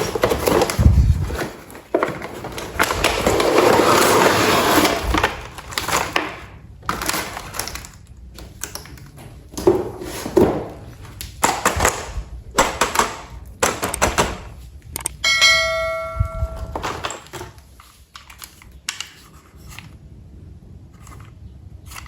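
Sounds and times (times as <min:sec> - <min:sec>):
plastic parts clicking and rustling: 0:00.0 - 0:15.2, 0:16.6 - 0:20.0, 0:20.9 - 0:22.0
bright bell-like ring: 0:15.2 - 0:16.8.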